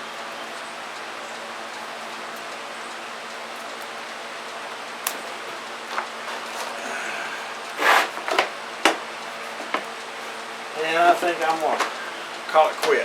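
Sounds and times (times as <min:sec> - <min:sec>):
ceiling fan whooshing: 0:00.0 - 0:13.0
sharp clicks: 0:05.0 - 0:05.4
short rustling burst: 0:07.7 - 0:08.3.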